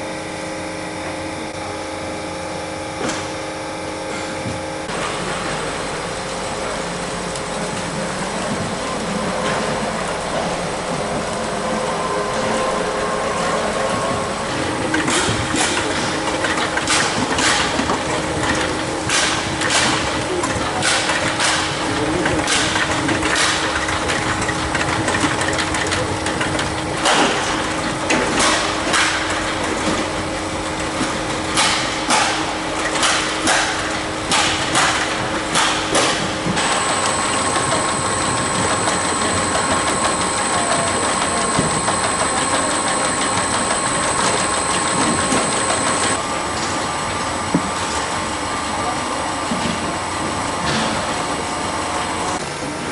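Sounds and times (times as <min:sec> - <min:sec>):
sizing machine running: 0:33.9 - 0:46.6
high whine: 0:36.5 - 0:46.5.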